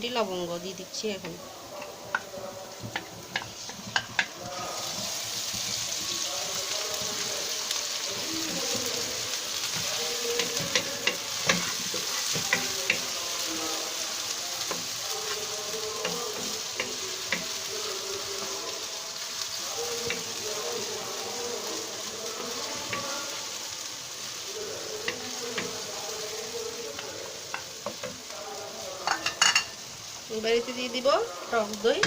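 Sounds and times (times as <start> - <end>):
onion and spices sizzling in oil: 0.0 - 32.0
utensil scraping a pan: 8.0 - 13.3.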